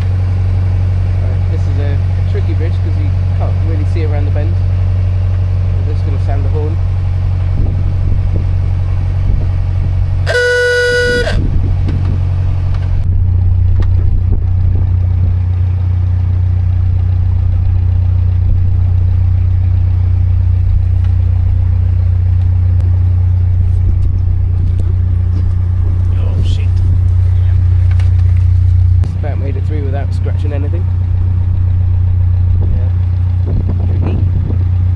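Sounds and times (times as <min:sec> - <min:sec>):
boat engine running: 0:00.0 - 0:34.9
boat horn blast: 0:10.2 - 0:11.6.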